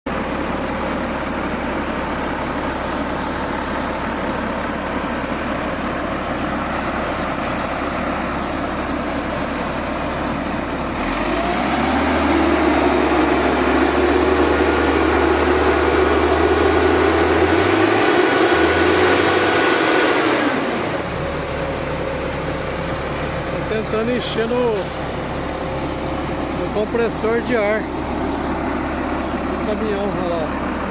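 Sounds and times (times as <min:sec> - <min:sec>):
truck engine idling and revving: 0:00.1 - 0:30.9.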